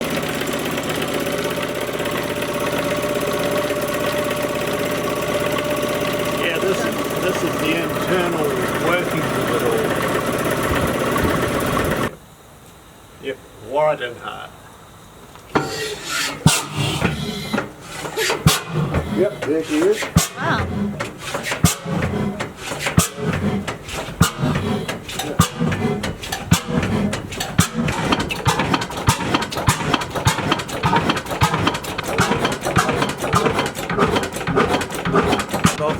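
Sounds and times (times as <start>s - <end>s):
diesel engine running: 0.0s - 12.2s, 15.6s - 35.9s
steady whine: 2.4s - 12.3s, 13.6s - 32.2s.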